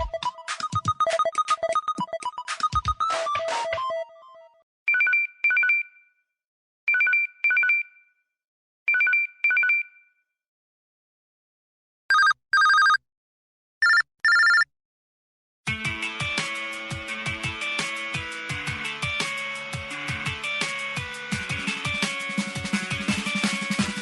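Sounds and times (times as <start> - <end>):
two-tone ringtone beeps: 0.0 - 6.1, 6.9 - 8.0, 8.9 - 10.1, 12.1 - 13.0, 13.8 - 14.7
electronic telephone ring: 12.1 - 13.0, 13.8 - 14.7.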